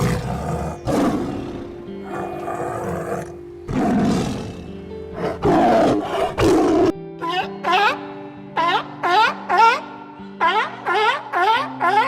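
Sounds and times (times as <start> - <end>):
big cat roaring: 0.0 - 7.0
background music with held tones: 0.0 - 12.0.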